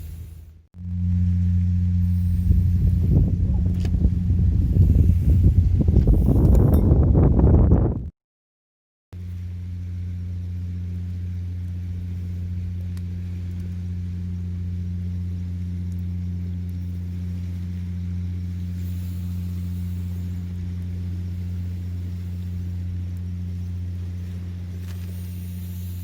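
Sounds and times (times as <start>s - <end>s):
low engine hum: 0.0s - 8.1s, 9.2s - 26.0s
faint hiss: 16.6s - 26.0s.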